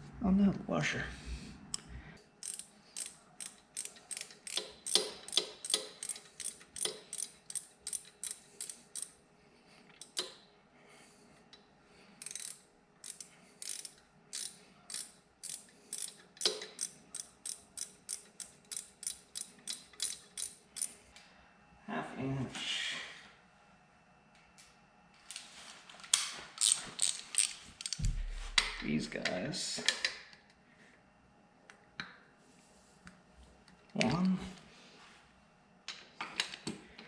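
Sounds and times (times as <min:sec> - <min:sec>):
socket ratchet clicking: 0:02.4 - 0:09.1, 0:12.2 - 0:21.0, 0:26.6 - 0:28.0.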